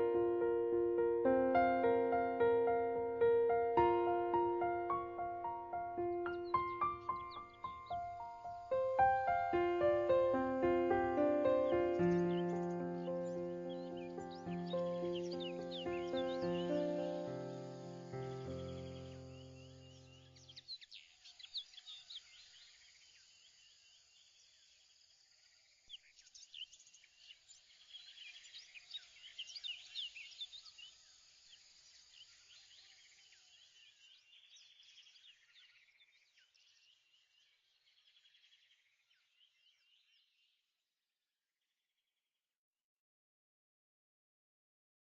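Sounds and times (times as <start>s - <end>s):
birds chirping and trilling: 0.0s - 23.0s.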